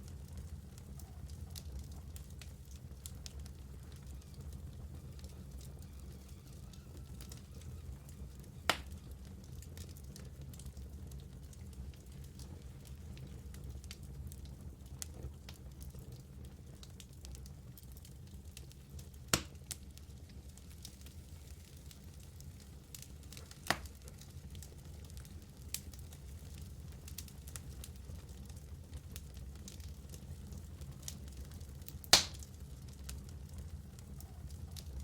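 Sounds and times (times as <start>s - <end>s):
wood fire crackling: 0.0s - 35.0s
sharp fire pops: 8.7s - 9.0s, 19.3s - 19.8s, 23.4s - 24.1s, 32.0s - 32.6s.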